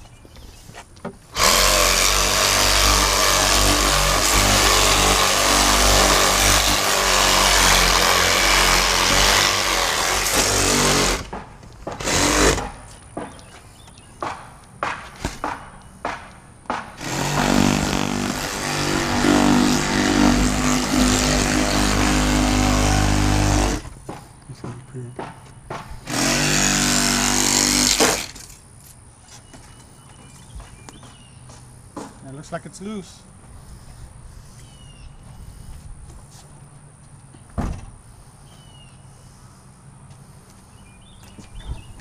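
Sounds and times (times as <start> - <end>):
power cutting tool running: 1.4 - 11.3, 12.0 - 12.6, 17.0 - 23.9, 26.1 - 28.4.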